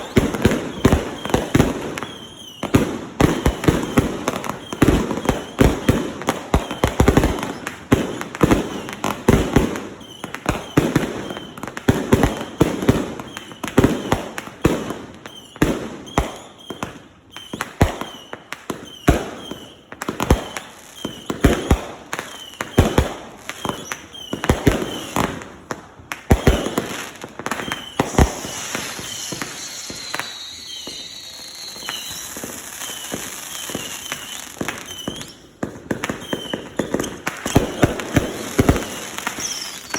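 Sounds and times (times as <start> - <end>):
firework whistle: 0.0 - 25.6, 26.3 - 39.9
fireworks crackling hiss: 0.0 - 39.9
fireworks launching and bursting: 0.0 - 39.9.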